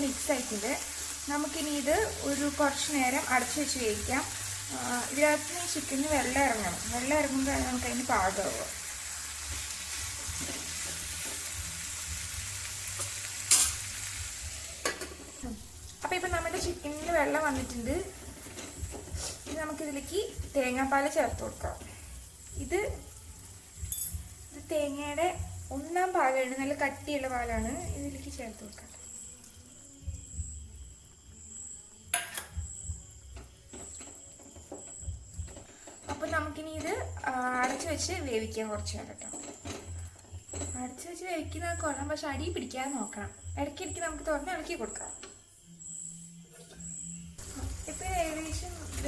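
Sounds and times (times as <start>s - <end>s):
chicken sizzling in a pan: 0.0s - 42.4s, 47.4s - 49.0s
faint high-pitched chirring: 27.8s - 49.0s
metal utensil knocking on pan: 32.1s - 32.8s.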